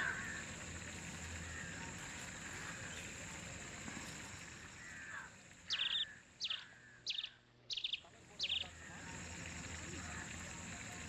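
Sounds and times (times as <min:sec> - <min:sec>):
bird harsh calls: 0:00.0 - 0:00.6, 0:04.8 - 0:09.3
steady outdoor hiss: 0:00.0 - 0:11.0.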